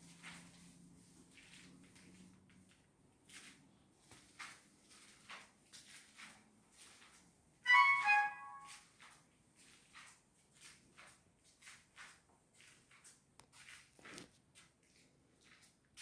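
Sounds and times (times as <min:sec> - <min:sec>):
swishing strokes on wallpaper: 0:00.0 - 0:07.4
brief musical tone: 0:07.7 - 0:08.8.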